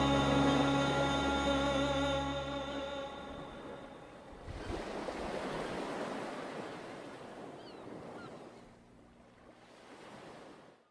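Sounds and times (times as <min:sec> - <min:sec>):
faint high bird calls: 0:07.5 - 0:08.8.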